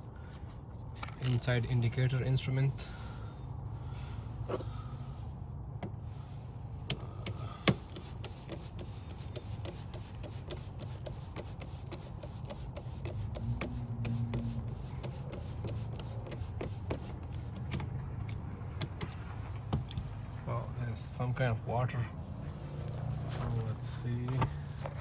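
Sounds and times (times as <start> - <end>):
turn signal ticking: 8.8 - 19.1
low hum: 13.3 - 15.0.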